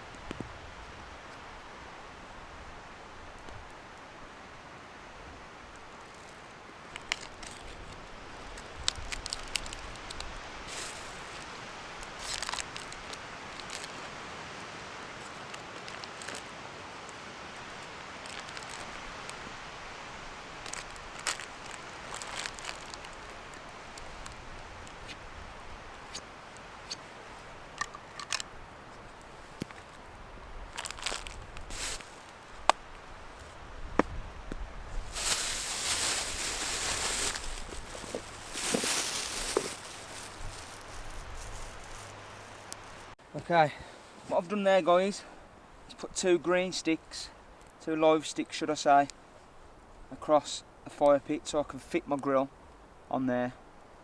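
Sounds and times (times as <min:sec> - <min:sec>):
wood fire crackling: 0:15.0 - 0:25.2, 0:30.7 - 0:33.6, 0:35.0 - 0:43.2.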